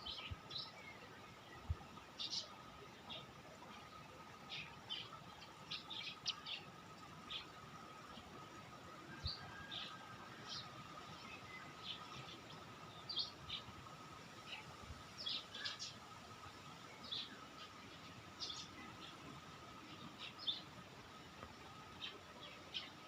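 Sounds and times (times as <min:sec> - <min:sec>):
faint steady hum: 0:00.0 - 0:23.0
songbirds chirping: 0:00.0 - 0:23.0.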